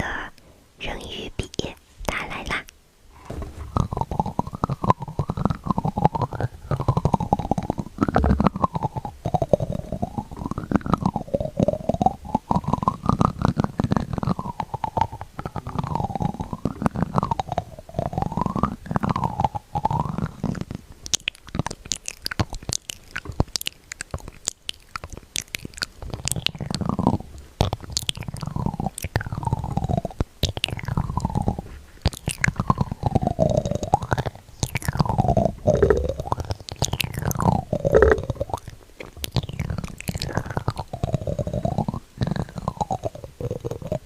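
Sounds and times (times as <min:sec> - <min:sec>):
mouth clicking sounds: 0:00.0 - 0:02.8, 0:03.6 - 0:44.0
low rumble: 0:03.2 - 0:05.9.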